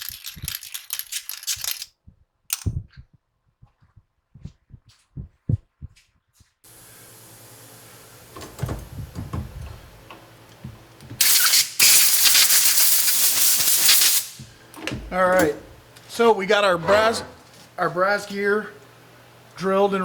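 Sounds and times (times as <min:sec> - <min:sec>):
loud steady hiss: 0:06.7 - 0:10.5, 0:11.2 - 0:14.5
machine tool motor humming: 0:06.7 - 0:17.7.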